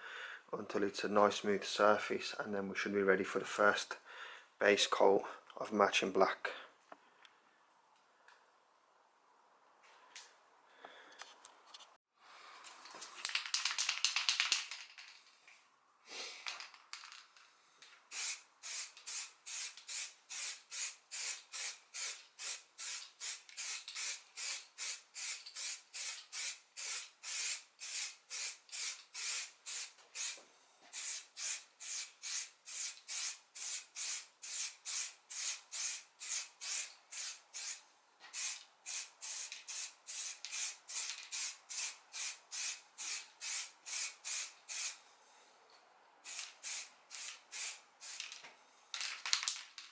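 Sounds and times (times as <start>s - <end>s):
spray gun hissing bursts: 18.1s - 45.0s, 46.2s - 48.2s.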